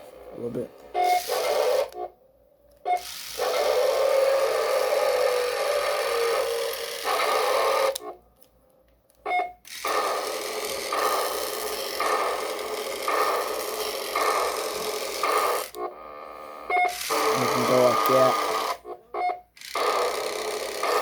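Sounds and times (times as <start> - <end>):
toy robot electronic sound effects: 0.9 - 2.1, 2.9 - 8.1, 9.6 - 15.8, 16.7 - 21.0
toy motor running: 1.0 - 2.0, 2.9 - 8.1, 9.6 - 15.8, 16.8 - 18.8, 19.5 - 21.0.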